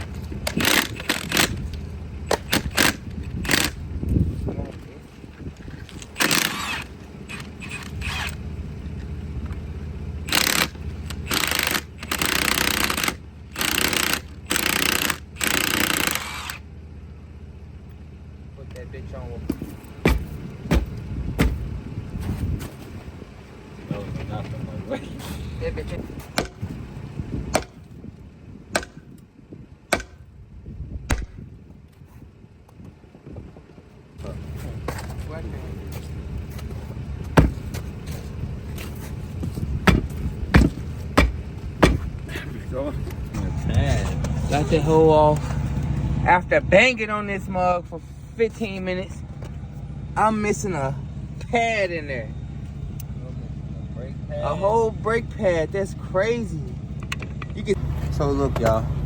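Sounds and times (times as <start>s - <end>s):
steady low hum: 0.0s - 59.0s
impact wrench hammering: 2.3s - 3.8s, 6.1s - 8.4s, 10.3s - 16.6s, 19.5s - 21.6s, 26.3s - 26.7s, 28.7s - 29.1s, 29.9s - 30.2s, 37.4s - 37.8s, 39.8s - 42.1s.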